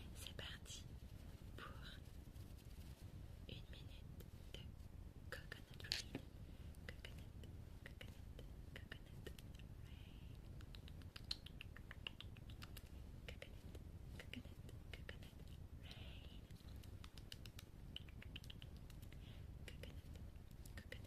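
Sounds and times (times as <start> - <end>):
tongue and lip clicks: 10.6 - 13.5, 16.8 - 20.0.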